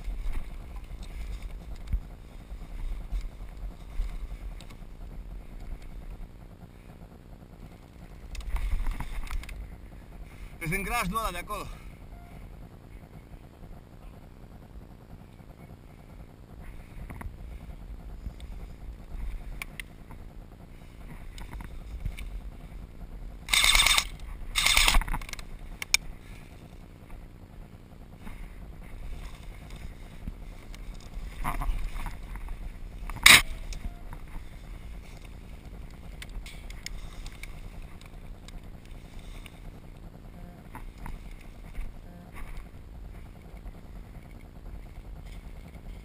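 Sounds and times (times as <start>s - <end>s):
airsoft gun bursts: 23.5s - 25.1s.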